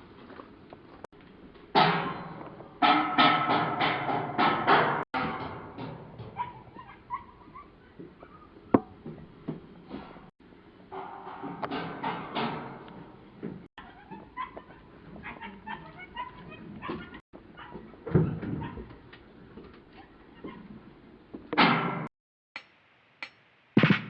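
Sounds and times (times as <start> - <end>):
scattered knocks and bumps: 1.7 - 6.8, 8.0 - 10.3, 10.9 - 15.3
dog whimpering and yipping: 6.4 - 8.6, 13.8 - 17.9.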